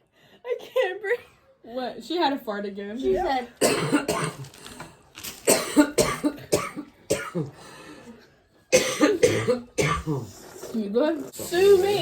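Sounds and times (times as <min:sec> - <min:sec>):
person coughing: 0:03.6 - 0:04.5, 0:05.5 - 0:07.6, 0:08.7 - 0:10.3.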